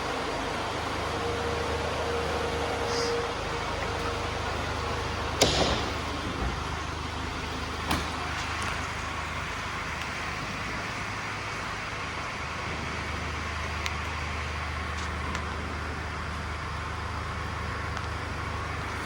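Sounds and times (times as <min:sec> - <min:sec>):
van engine humming: 0:00.0 - 0:19.0
knocks: 0:05.4 - 0:06.8.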